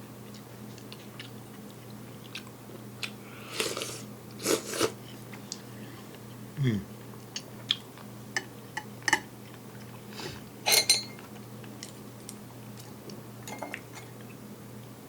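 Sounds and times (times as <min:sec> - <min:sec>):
faint steady hum: 0:00.0 - 0:15.0
cutlery clinking on a dish: 0:10.7 - 0:11.2.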